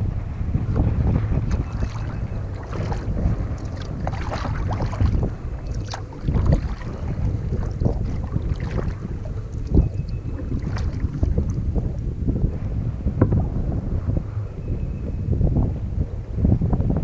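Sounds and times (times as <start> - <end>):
wind buffeting microphone: 0.0 - 17.0
paddle splashes and drips: 1.5 - 11.6.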